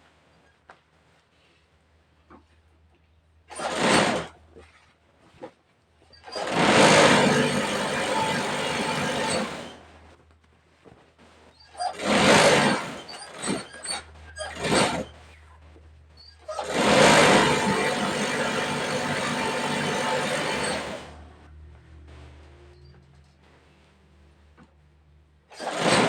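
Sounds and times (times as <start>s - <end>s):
sewing machine running: 6.4s - 9.8s, 12.0s - 13.6s, 16.6s - 21.3s, 25.6s - 26.0s.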